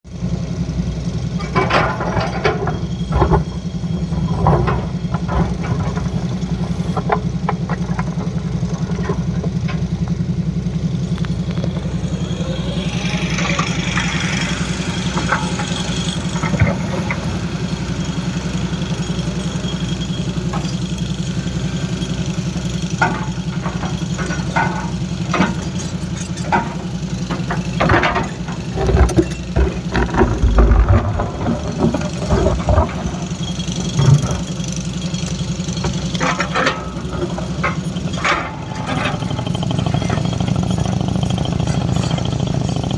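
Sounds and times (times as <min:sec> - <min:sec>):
excavator diesel engine running: 0:00.1 - 0:42.9
knocks and clanks: 0:01.4 - 0:10.2, 0:13.5 - 0:17.8, 0:22.5 - 0:34.9, 0:35.6 - 0:42.9.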